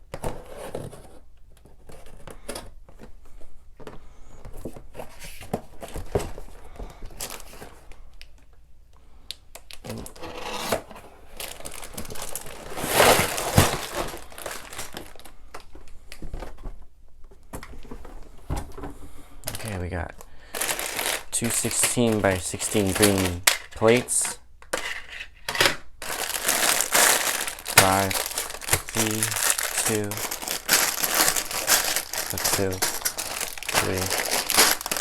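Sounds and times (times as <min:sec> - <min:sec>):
plastic bags crinkling: 0:11.2 - 0:15.8, 0:19.4 - 0:35.0.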